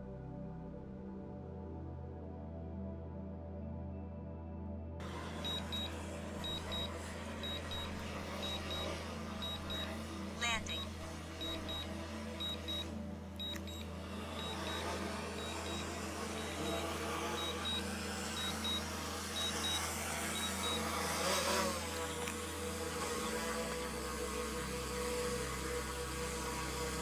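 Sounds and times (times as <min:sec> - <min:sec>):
steady low hum: 0:05.0 - 0:27.0
remote controller double beeps: 0:05.4 - 0:21.0.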